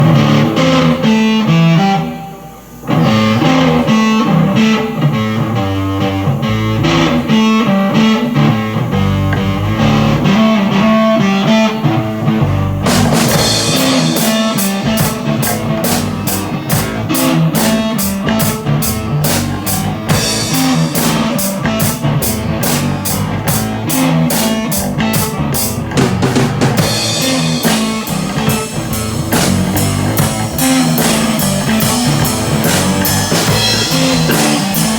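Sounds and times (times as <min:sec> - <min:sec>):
rock band playing: 0:00.0 - 0:34.9
cymbals crashing: 0:12.9 - 0:34.9.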